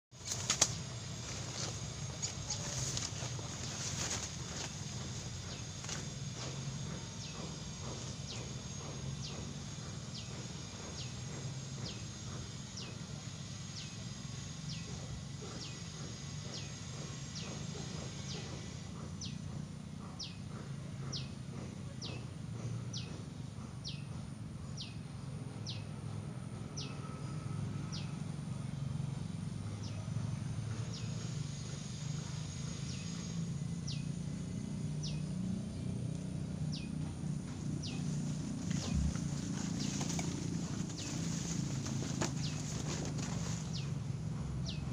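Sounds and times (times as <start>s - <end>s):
steady low rumble: 35.0s - 44.9s.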